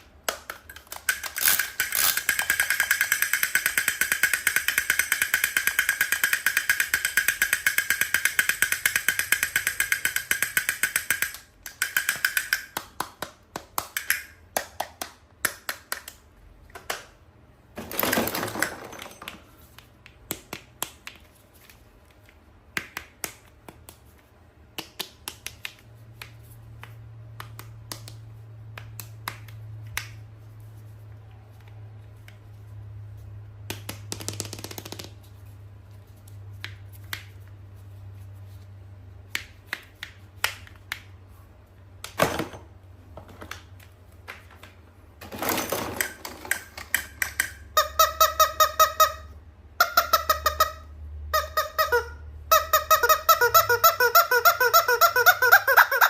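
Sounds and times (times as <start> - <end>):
plastic toys clicking: 0.3 - 17.1, 33.7 - 35.2, 45.6 - 49.0.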